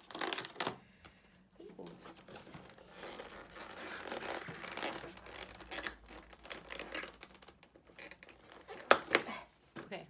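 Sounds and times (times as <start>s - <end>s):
cardboard packaging crinkling and tearing: 0.0s - 0.8s, 2.0s - 9.2s.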